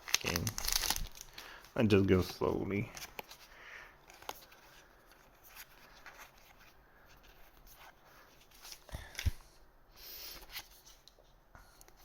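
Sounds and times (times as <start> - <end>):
card pack crinkling and rustling: 0.0 - 9.4.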